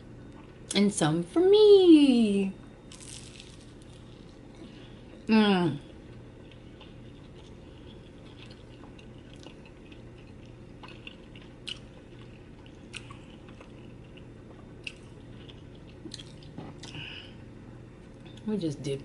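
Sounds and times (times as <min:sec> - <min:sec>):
crisp food crunches: 0:02.9 - 0:04.4
mouth chewing sounds: 0:06.5 - 0:17.0.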